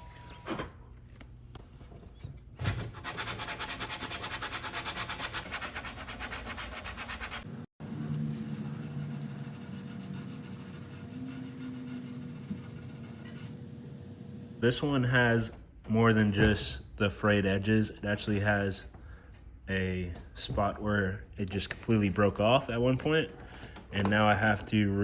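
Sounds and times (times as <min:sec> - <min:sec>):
sandpaper rubbing on board: 0:03.0 - 0:07.5, 0:08.4 - 0:13.6.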